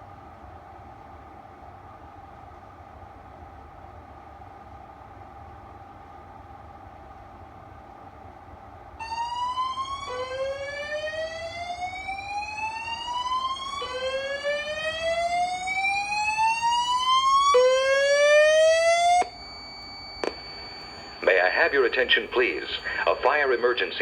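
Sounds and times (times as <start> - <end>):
fire alarm whoop tone: 9.0 - 24.0.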